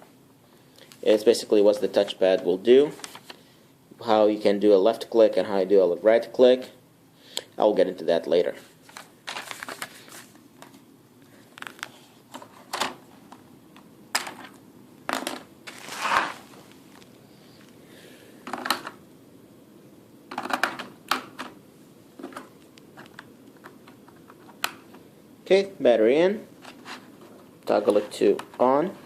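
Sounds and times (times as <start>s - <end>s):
rustling: 15.6s - 17.8s.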